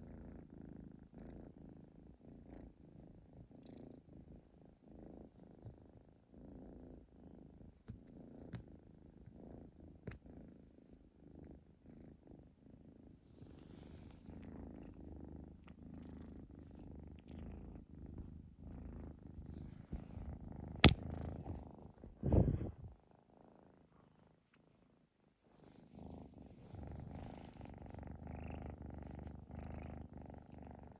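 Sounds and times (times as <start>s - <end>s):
kitten purring: 0.0s - 30.9s
sharp click: 20.8s - 21.0s
short thump: 20.8s - 21.6s.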